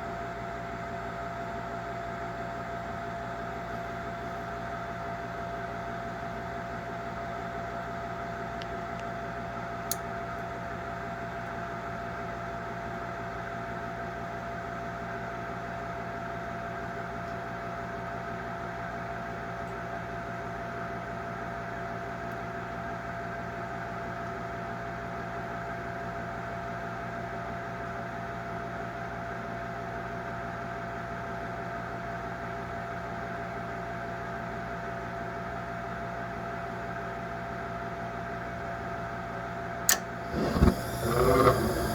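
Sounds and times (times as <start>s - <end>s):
furnace humming: 39.9s - 41.9s.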